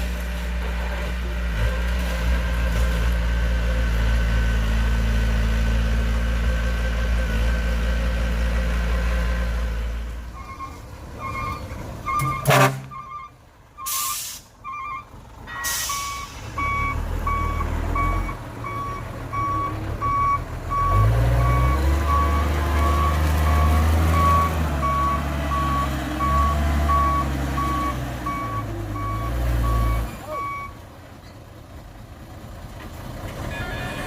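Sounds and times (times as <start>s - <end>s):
diesel truck engine: 0.0s - 34.0s
back-up alarm beeping: 10.4s - 30.7s
short air hisses: 13.9s - 14.5s.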